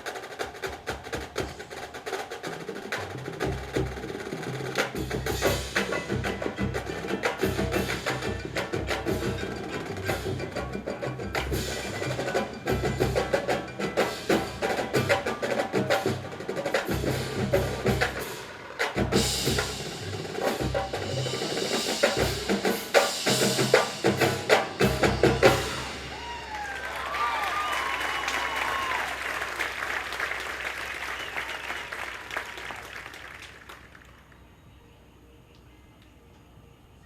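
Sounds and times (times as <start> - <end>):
snare and tenor drum strokes: 0.0 - 26.6
mallet keyboards: 5.0 - 26.1
pitched bass drums: 19.0 - 26.2.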